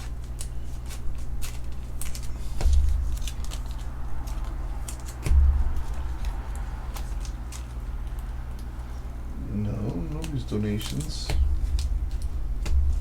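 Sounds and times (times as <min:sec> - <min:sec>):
cards and foil pack crinkling: 0:00.0 - 0:13.0
low steady hum: 0:00.0 - 0:13.0
dull thumps: 0:05.1 - 0:07.2, 0:11.2 - 0:13.0.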